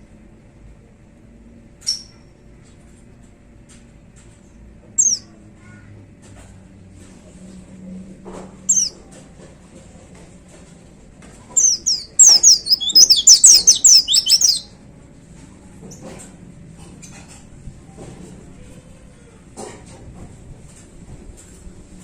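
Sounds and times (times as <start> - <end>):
bird singing high notes: 11.6 - 14.7.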